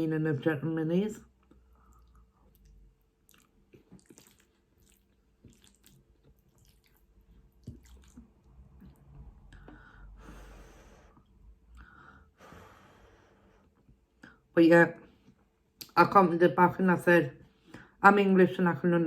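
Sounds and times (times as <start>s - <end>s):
chewing food: 1.4s - 9.7s
wet mouth clicks: 1.8s - 7.0s, 7.6s - 9.0s.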